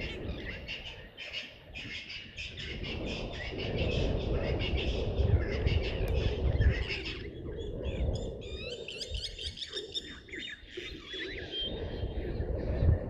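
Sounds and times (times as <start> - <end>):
birds chirping: 4.8 - 12.9.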